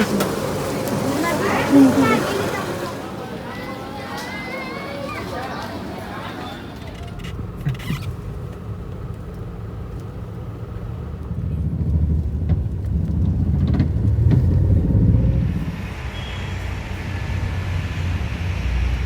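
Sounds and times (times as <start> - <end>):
motor vehicle rumble: 0.0 - 19.0.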